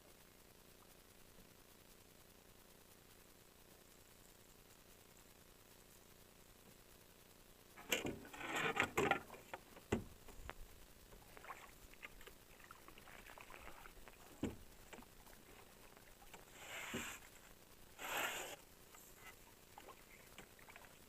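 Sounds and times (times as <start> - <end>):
water splashing: 11.1 - 17.4, 19.4 - 21.0.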